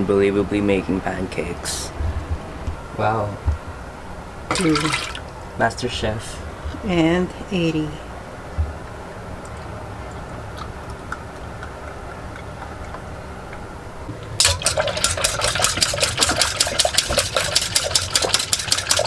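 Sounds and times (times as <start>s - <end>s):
utensil clinking against bowl: 14.4s - 19.0s.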